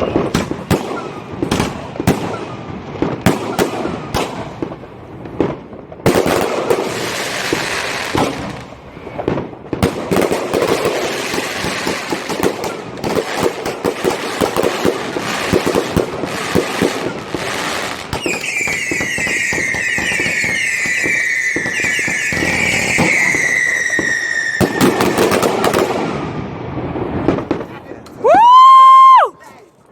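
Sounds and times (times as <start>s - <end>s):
whistling firework: 0.0s - 27.5s
fireworks banging and crackling: 0.0s - 29.9s.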